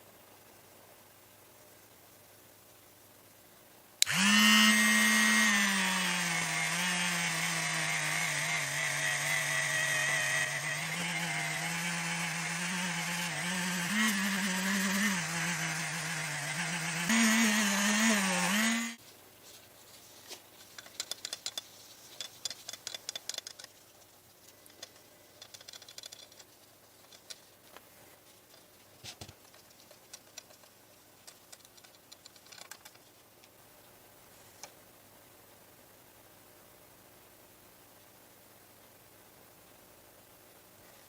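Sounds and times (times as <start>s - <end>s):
motor-driven tool running: 4.0s - 19.0s.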